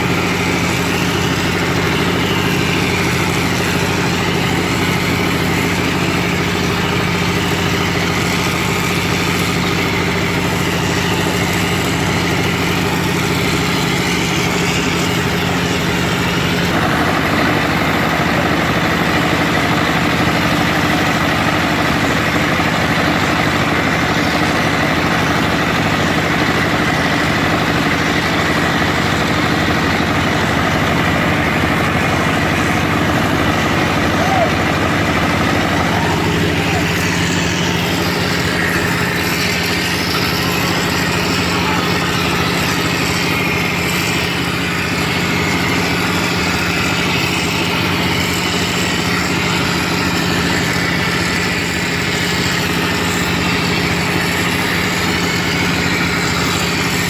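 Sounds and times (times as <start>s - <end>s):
plastering machine motor running: 0.0s - 57.0s.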